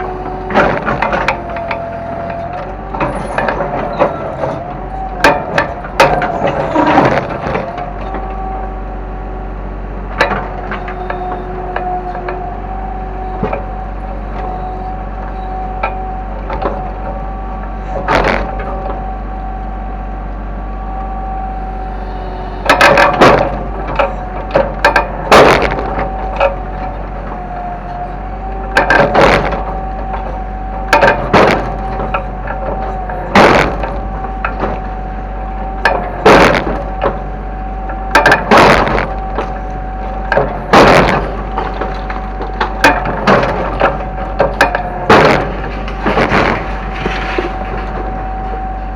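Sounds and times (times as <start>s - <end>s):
excavator engine drone and whine: 0.0s - 48.9s
loud cracking crashes: 28.8s - 32.3s, 32.9s - 34.8s, 35.8s - 37.2s, 38.2s - 39.6s, 40.3s - 48.2s.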